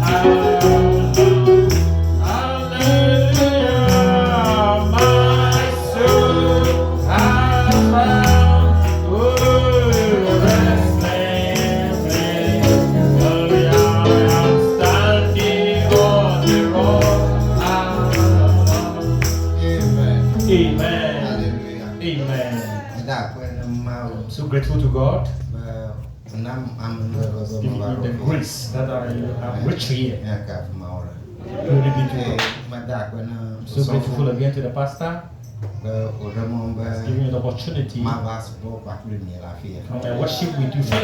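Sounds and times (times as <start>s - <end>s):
bass line: 0.0s - 21.8s, 24.6s - 26.3s
person singing lead: 0.0s - 21.8s
tambourine-like percussion: 0.0s - 24.0s.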